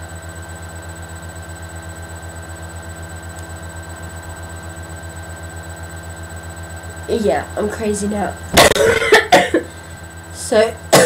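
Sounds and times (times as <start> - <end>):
background hum of fixed tones: 7.0 - 11.0.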